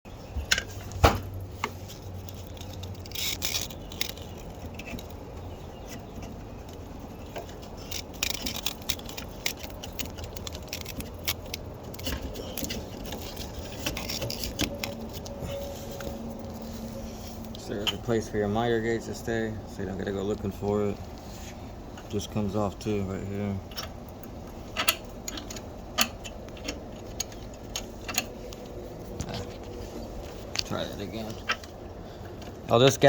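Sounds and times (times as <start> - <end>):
scrapes: 0.5 - 18.5, 20.9 - 22.3.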